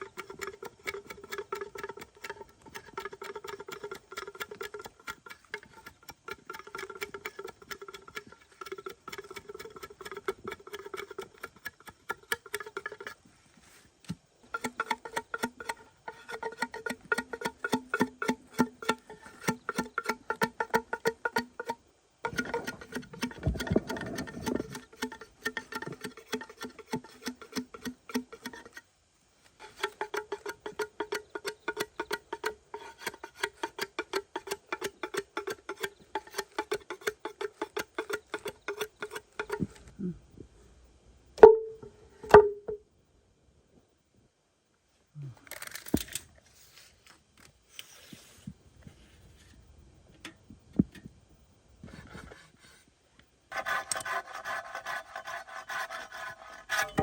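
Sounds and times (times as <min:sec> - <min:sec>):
rapid knocking on hollow object: 0:00.0 - 0:13.1, 0:14.5 - 0:28.8, 0:29.6 - 0:39.7.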